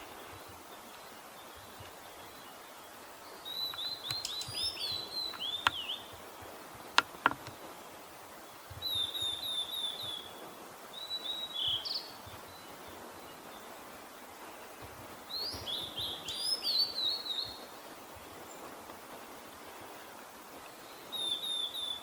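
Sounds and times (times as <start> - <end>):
sharp clicks: 3.6 - 5.9, 6.9 - 7.6.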